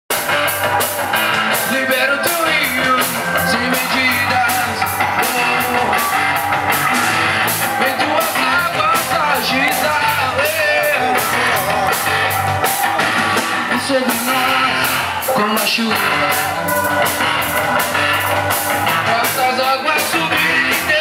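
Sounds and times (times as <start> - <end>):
rock band playing instrumental: 0.1 - 21.0.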